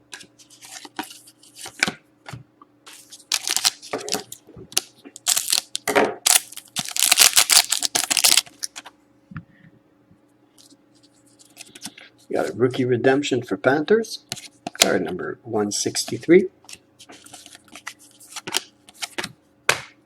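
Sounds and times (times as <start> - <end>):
wrapper tearing and crinkling: 3.3 - 4.4, 5.2 - 8.8.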